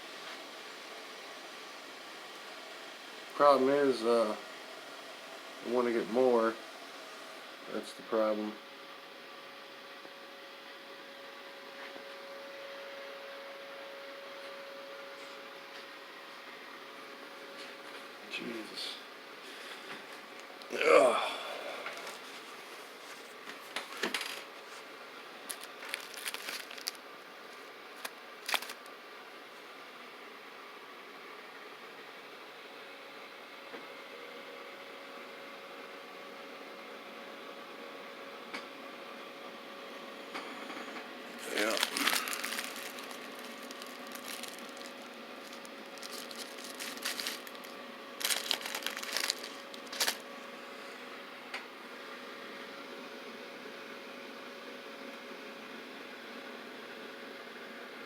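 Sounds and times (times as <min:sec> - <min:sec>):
faint steady hum: 0:00.0 - 0:58.0
wrapping crinkling: 0:23.0 - 0:24.8, 0:25.4 - 0:27.0, 0:27.9 - 0:28.9, 0:41.4 - 0:50.3.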